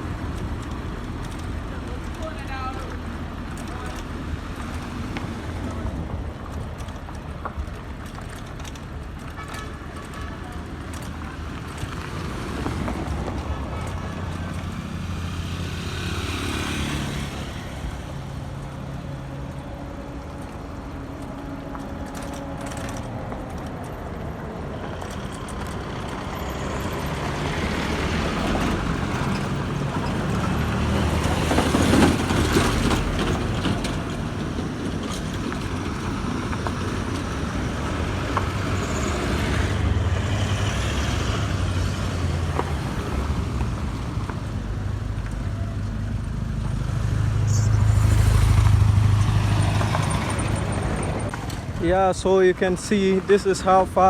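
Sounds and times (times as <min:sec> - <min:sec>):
passing vehicles: 0:00.0 - 0:54.0.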